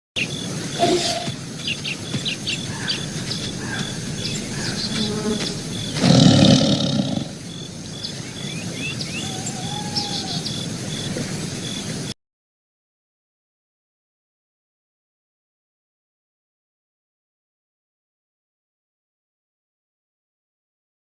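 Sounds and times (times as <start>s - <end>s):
birds chirping: 0.2s - 12.1s
high pulsing call: 0.7s - 10.6s
tiger roaring: 2.6s - 8.1s.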